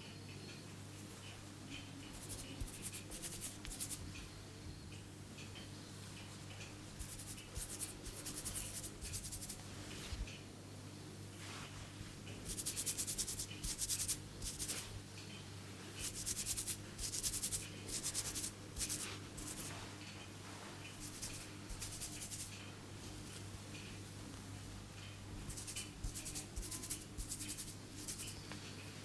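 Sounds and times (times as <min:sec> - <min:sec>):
hands rubbing hair on scalp: 0:02.2 - 0:04.0, 0:07.0 - 0:10.2, 0:12.5 - 0:15.0, 0:16.0 - 0:19.8, 0:20.9 - 0:22.6, 0:25.4 - 0:28.4.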